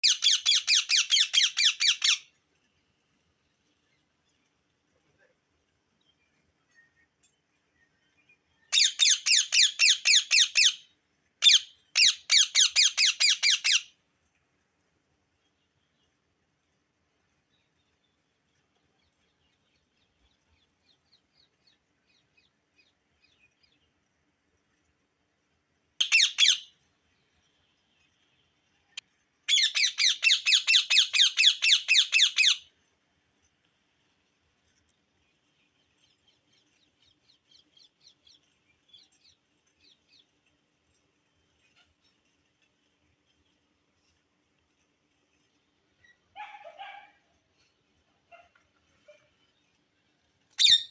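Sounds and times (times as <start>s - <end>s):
parakeet calling shrilly: 0.0s - 2.3s, 8.7s - 13.9s, 26.0s - 26.7s, 29.5s - 32.7s, 50.6s - 50.9s
parakeet screeching: 26.0s - 26.6s.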